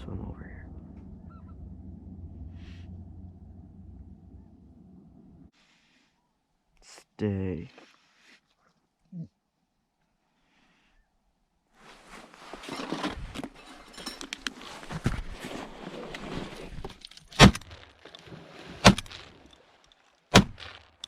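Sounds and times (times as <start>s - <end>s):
crunching on crusty snow: 14.6s - 21.0s
sharp loud knocks: 20.3s - 20.9s.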